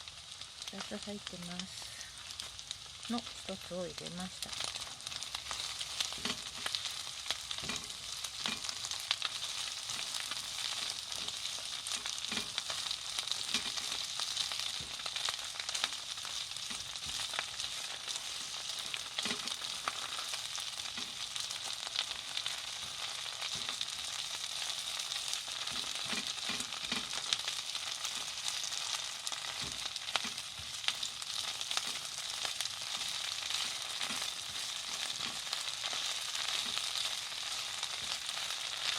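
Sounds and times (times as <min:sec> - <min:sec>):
food sizzling in a frying pan: 0:00.0 - 0:38.9
utensil tapping and scraping pan: 0:05.5 - 0:06.8, 0:07.5 - 0:08.9, 0:09.8 - 0:15.2, 0:15.8 - 0:20.2, 0:25.6 - 0:27.4, 0:31.7 - 0:37.1.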